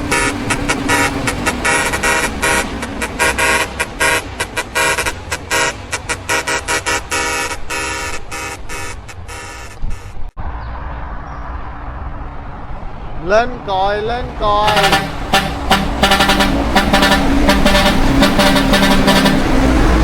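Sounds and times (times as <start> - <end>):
truck air horn blasts: 0.0 - 10.3, 14.6 - 20.0.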